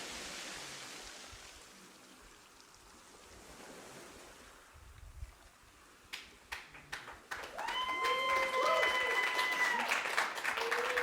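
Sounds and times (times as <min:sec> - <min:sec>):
hissing noise like surf: 0:00.0 - 0:02.0
sharp claps: 0:06.1 - 0:11.0.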